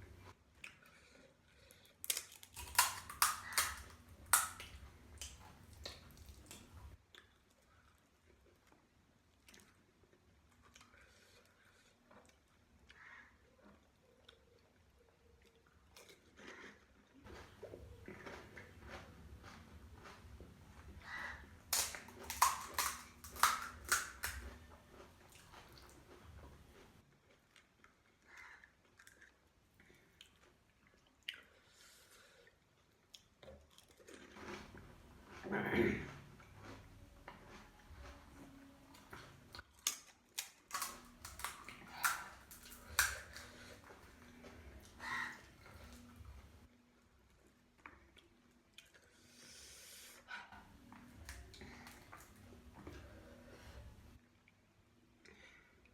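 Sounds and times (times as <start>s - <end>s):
soft chewing: 0.0s - 55.9s
crisp crunches of snack food: 1.9s - 7.6s, 21.1s - 26.3s, 39.6s - 44.4s.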